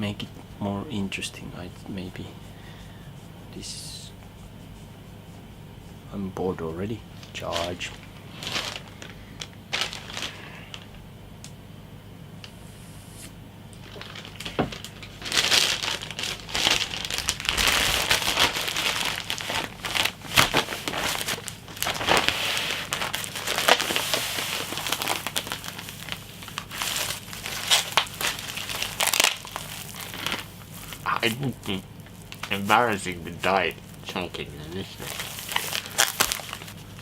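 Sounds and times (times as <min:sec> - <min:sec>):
plastic packaging crinkling: 0:07.2 - 0:11.0, 0:13.8 - 0:37.0.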